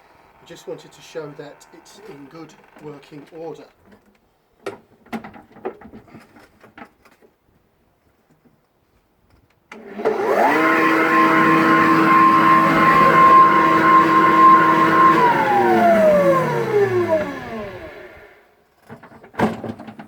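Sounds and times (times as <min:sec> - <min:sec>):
floor sander motor whining: 0:09.8 - 0:18.4.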